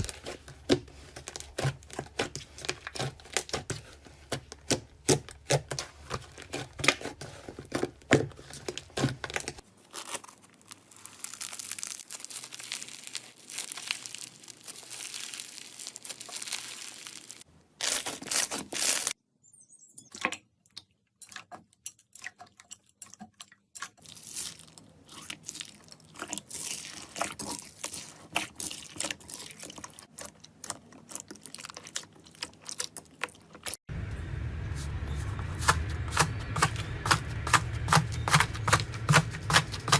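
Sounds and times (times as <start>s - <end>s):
slime crackling and popping: 9.0s - 19.1s, 24.0s - 33.8s.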